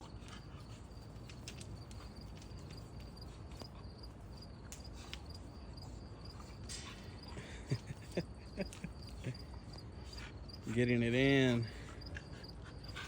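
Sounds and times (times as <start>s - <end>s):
insects chirping: 0.0s - 13.0s
light clicks and taps: 1.0s - 3.8s.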